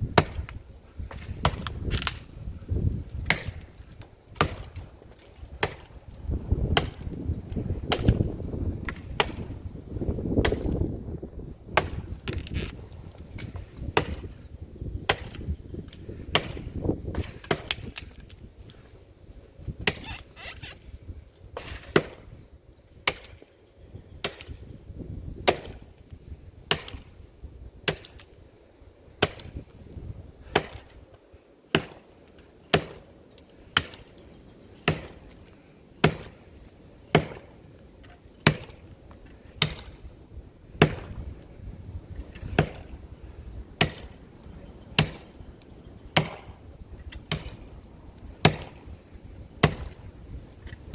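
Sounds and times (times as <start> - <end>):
axe chopping into tree trunk: 0.1 - 2.2, 3.2 - 5.9, 6.6 - 7.1, 7.9 - 9.5, 10.3 - 10.8, 11.7 - 12.8, 13.4 - 14.3, 15.1 - 15.5, 16.3 - 18.2, 19.8 - 20.2, 21.6 - 22.3, 23.0 - 23.4, 24.2 - 24.6, 25.4 - 25.9, 26.7 - 27.1, 27.8 - 28.3, 29.2 - 29.6, 30.5 - 30.9, 31.7 - 32.0, 32.7 - 33.1, 33.7 - 34.1, 34.8 - 35.2, 36.0 - 36.4, 37.1 - 37.5, 38.4 - 38.8, 39.6 - 40.0, 40.8 - 41.2, 42.3 - 42.9, 43.8 - 44.2, 44.9 - 45.3, 46.2 - 47.6, 48.4 - 48.8, 49.6 - 50.0.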